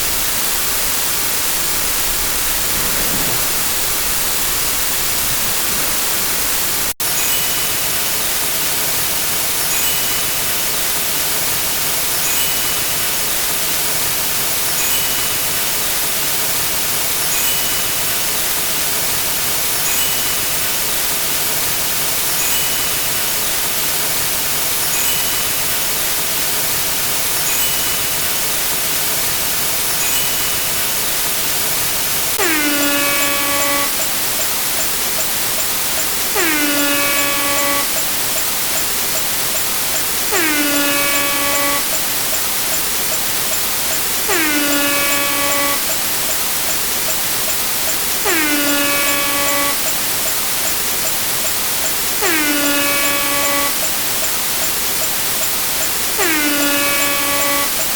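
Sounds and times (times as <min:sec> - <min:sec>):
steady rushing noise: 0:01.5 - 0:06.9
air horn blast: 0:32.4 - 0:34.1, 0:36.4 - 0:38.1, 0:40.3 - 0:42.2, 0:44.3 - 0:45.9, 0:48.2 - 0:49.9, 0:52.2 - 0:53.8, 0:56.2 - 0:57.8
faint short tone: 0:40.3 - 0:42.1.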